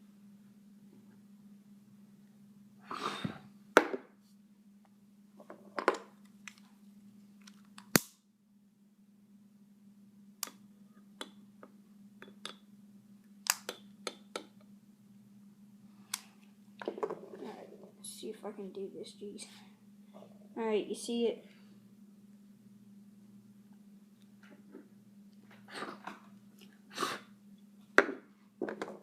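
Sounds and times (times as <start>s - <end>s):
breath blowing out candle: 2.8s - 3.5s, 26.9s - 27.3s.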